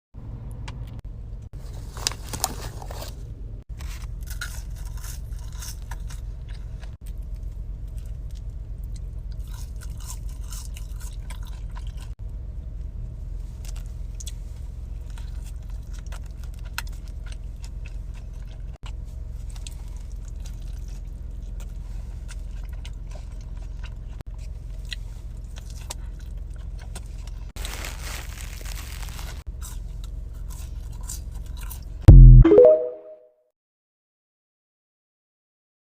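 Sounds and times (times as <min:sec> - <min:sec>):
chewing and crunching food: 0:03.8 - 0:12.2, 0:13.4 - 0:32.1
low hum: 0:32.1 - 0:33.1.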